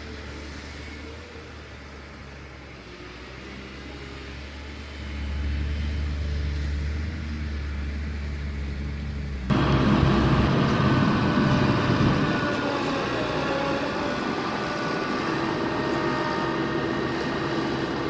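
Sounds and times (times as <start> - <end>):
diesel engine running: 5.9 - 18.0
noisy machine with faint whine: 9.5 - 18.0.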